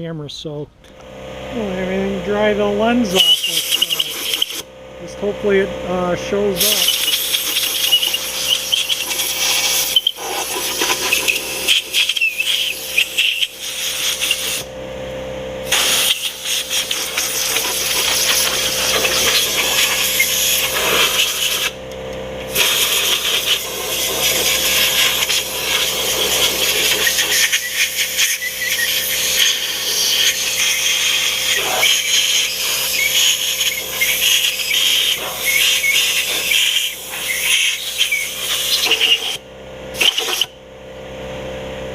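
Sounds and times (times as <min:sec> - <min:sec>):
pump humming: 0:00.8 - 0:41.9
pressure washer spray on metal: 0:03.1 - 0:04.6, 0:06.6 - 0:14.7, 0:15.6 - 0:21.8, 0:22.5 - 0:39.4, 0:40.0 - 0:40.5.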